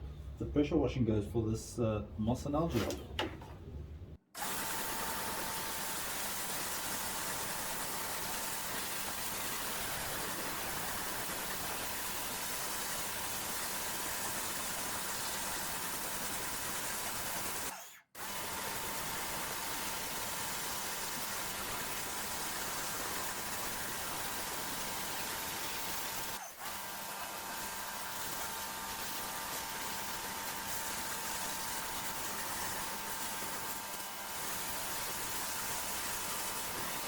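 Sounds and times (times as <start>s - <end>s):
pressure washer hum: 18.4s - 37.0s.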